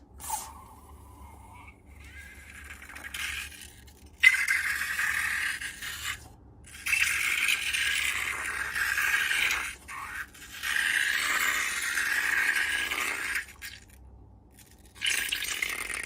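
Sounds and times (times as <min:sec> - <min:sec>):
gritty scraping hiss of slime: 0:00.2 - 0:07.0.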